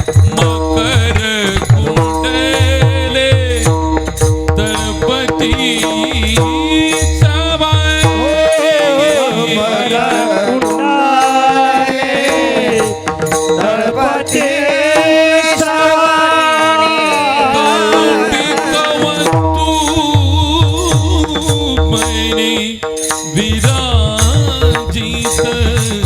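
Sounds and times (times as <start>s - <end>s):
man singing: 0.0s - 26.0s.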